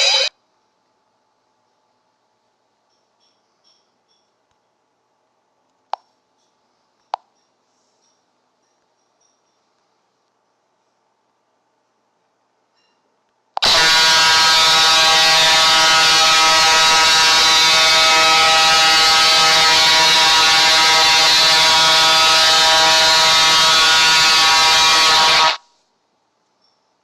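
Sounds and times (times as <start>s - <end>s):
harsh buzzing ringtone: 0.0s - 0.3s, 13.6s - 25.6s.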